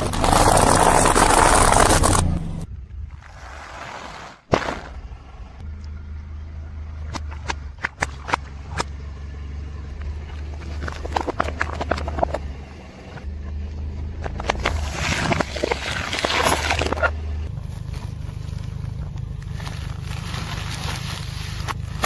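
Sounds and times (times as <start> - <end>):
car engine humming: 0.0 - 3.7, 4.8 - 22.0
tyre crushing crunchy objects: 0.0 - 5.1, 10.0 - 12.5, 14.3 - 22.0.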